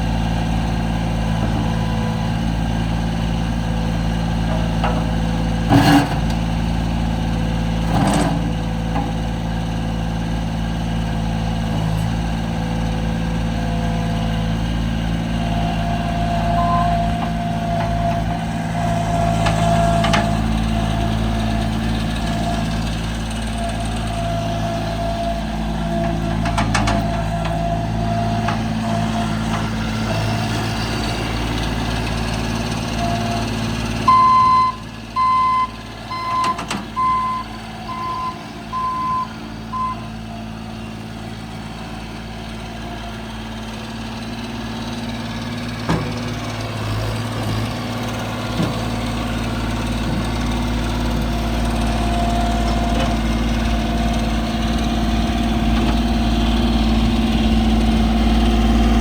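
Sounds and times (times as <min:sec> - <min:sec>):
diesel engine running: 0:00.0 - 0:59.0
backup alarm beeps: 0:16.4 - 0:17.2, 0:34.1 - 0:40.1.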